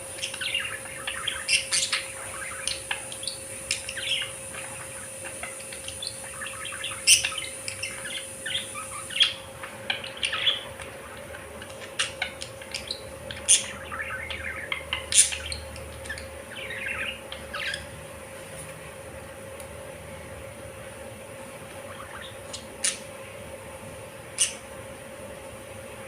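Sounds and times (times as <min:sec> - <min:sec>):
budgerigars chirping: 0:00.0 - 0:17.9, 0:21.8 - 0:23.1, 0:24.4 - 0:24.6.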